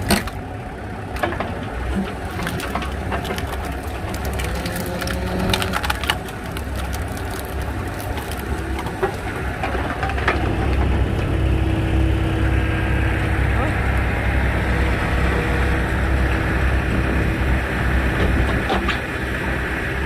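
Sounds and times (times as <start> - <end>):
firewood cracking and splintering: 0.0 - 12.4
engine humming: 0.0 - 20.0.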